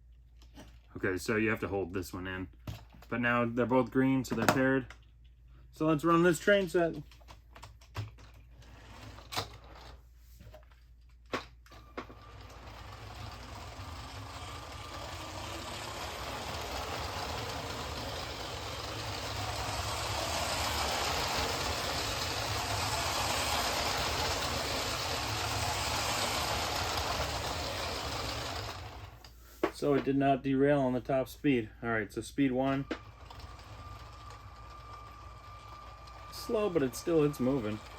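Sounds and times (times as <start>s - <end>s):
toy train running on plastic track: 11.8s - 29.2s, 32.6s - 37.9s.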